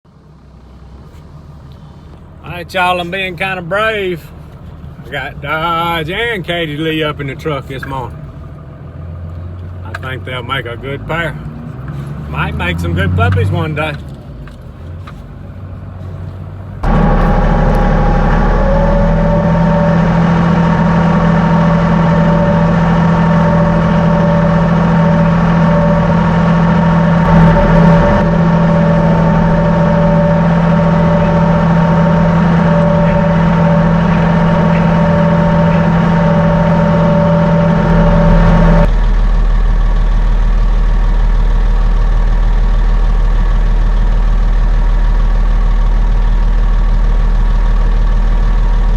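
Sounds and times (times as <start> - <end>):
engine humming: 0.0 - 48.9
low steady rumble: 0.1 - 48.9
steady whine: 16.8 - 48.9.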